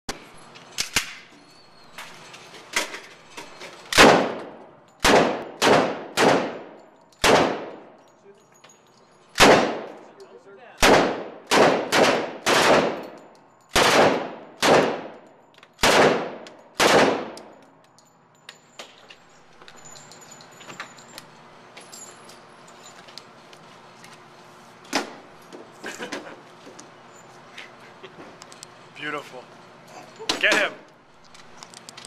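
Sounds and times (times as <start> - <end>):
gunshots with ringing echo: 4.0 - 7.9, 9.4 - 10.0, 10.8 - 15.2, 15.8 - 17.5
metallic clinks of gun handling: 6.6 - 10.4, 13.0 - 13.8, 15.2 - 15.8, 16.4 - 24.2.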